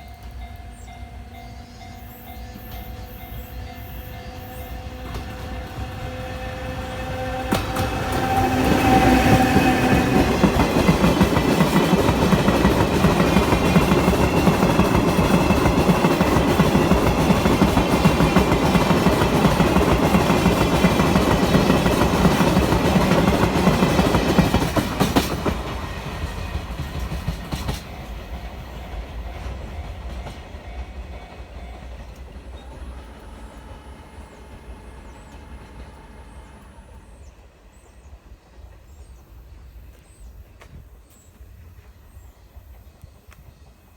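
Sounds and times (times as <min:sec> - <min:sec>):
train wheels clattering over rails: 0:02.4 - 0:36.6.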